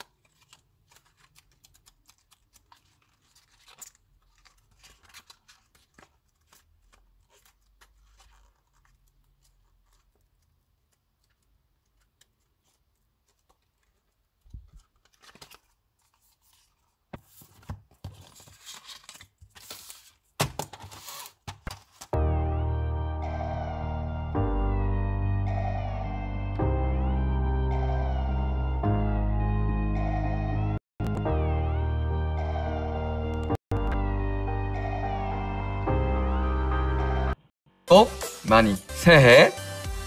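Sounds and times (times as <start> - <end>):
packaging tearing and crinkling: 0.0 - 16.7, 18.1 - 22.2
small clicks and rustles: 0.1 - 16.9.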